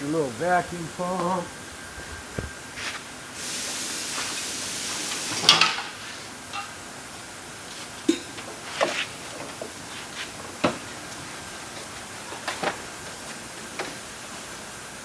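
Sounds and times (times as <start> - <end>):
hiss: 2.0 - 6.5.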